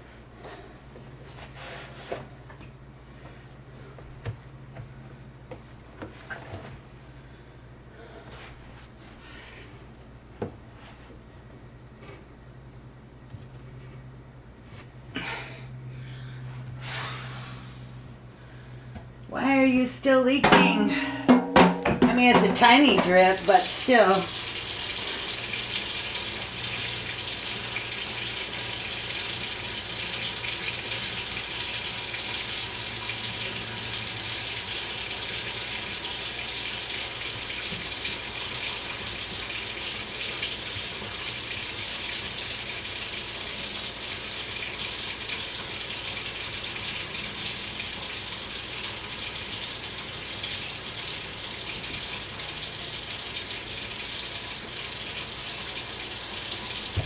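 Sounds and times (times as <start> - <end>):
faucet water pouring into sink: 21.8 - 57.0.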